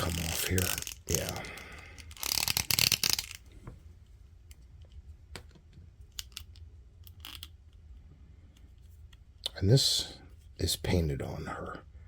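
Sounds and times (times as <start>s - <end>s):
plastic parts clicking: 4.8s - 7.8s.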